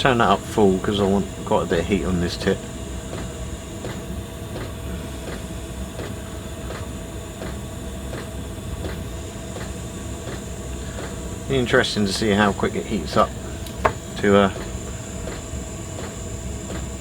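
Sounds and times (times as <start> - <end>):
gas soldering iron hissing: 0.0 - 17.0
faint regular ticks: 3.1 - 5.4, 6.0 - 12.0, 12.6 - 17.0.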